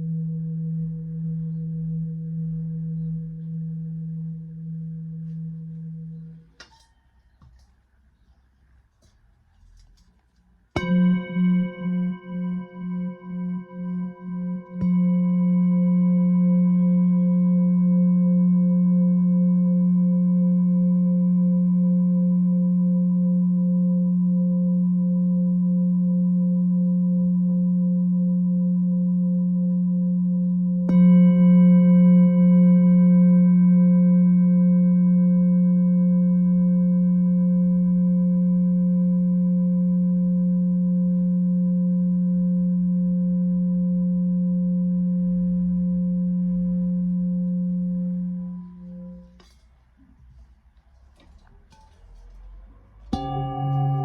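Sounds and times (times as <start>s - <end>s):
singing bowl ringing: 10.8s - 49.6s, 51.7s - 54.0s.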